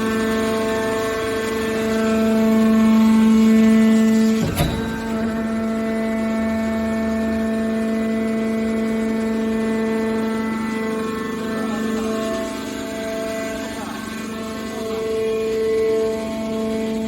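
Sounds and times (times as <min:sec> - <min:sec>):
hydraulic power unit humming: 0:02.2 - 0:09.1
metal clank: 0:04.4 - 0:06.3.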